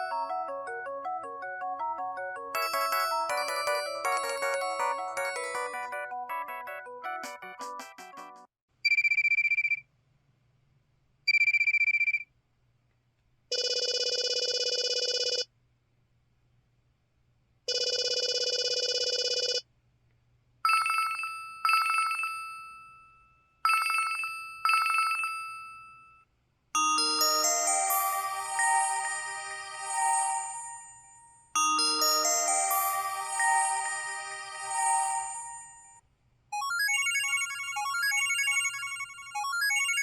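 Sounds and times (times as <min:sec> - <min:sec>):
chime-like rings: 0:00.0 - 0:00.6, 0:02.6 - 0:06.1, 0:26.8 - 0:36.0
phone ringtone melody: 0:00.0 - 0:07.9, 0:20.7 - 0:22.7, 0:23.7 - 0:25.9, 0:26.8 - 0:36.0, 0:36.6 - 0:40.0
buzzy phone tones: 0:32.0 - 0:36.0.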